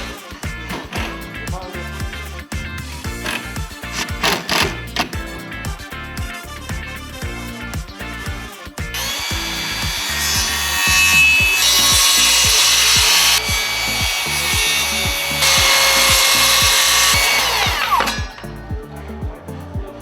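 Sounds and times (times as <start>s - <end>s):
electric power saw cutting wood: 0.0s - 1.4s, 2.9s - 5.3s, 9.0s - 18.5s.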